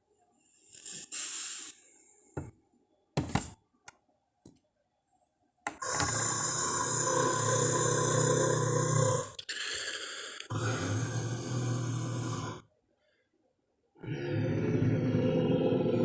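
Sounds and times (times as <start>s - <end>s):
soft breathy hiss: 0.4s - 2.4s
loud low growl: 5.8s - 9.4s, 10.5s - 12.7s, 14.0s - 16.0s.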